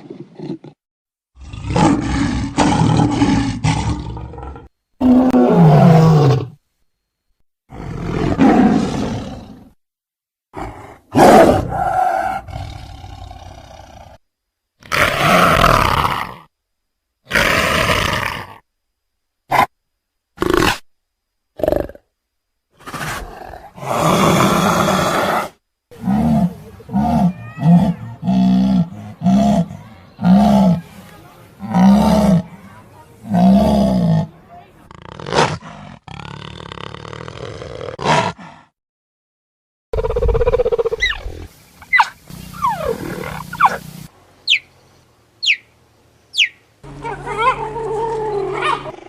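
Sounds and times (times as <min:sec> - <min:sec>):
big cat growling: 0:01.4 - 0:06.6, 0:07.7 - 0:09.8, 0:22.8 - 0:30.9, 0:31.6 - 0:38.7, 0:46.8 - 0:49.0
lion roaring and grunting: 0:01.4 - 0:06.6, 0:07.7 - 0:09.8, 0:22.8 - 0:30.9, 0:31.6 - 0:32.6, 0:33.2 - 0:34.3, 0:34.9 - 0:38.7, 0:46.9 - 0:49.0
high chirps: 0:40.5 - 0:44.7, 0:45.4 - 0:45.7, 0:46.3 - 0:46.6.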